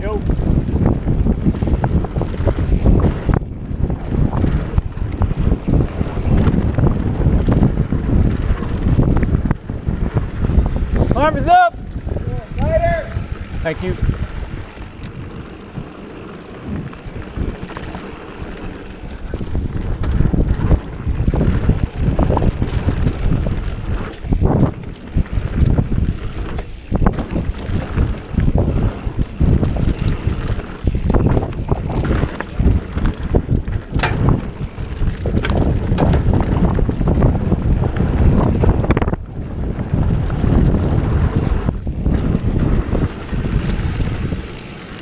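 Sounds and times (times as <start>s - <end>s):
bike knocking and rattling: 0.0s - 45.0s
bike tyres rumbling on dirt: 0.0s - 45.0s
wind buffeting microphone: 0.0s - 45.0s.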